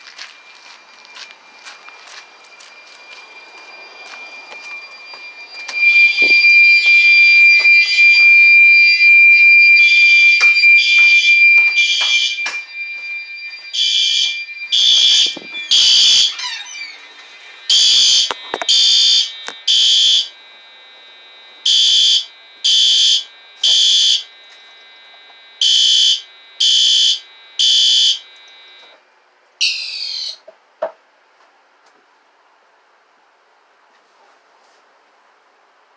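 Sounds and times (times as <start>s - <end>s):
smoke alarm beeps: 0.0s - 29.0s, 29.6s - 30.4s
smoke alarm shrill tone: 0.0s - 29.0s, 29.6s - 30.4s
short falling chirp: 15.6s - 17.7s.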